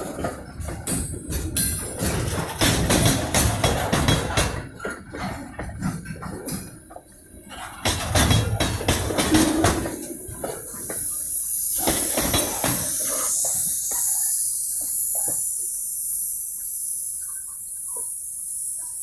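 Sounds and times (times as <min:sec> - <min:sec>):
train wheels knocking over rail joints: 0:00.0 - 0:15.6
steady high-pitched hiss: 0:08.9 - 0:19.0.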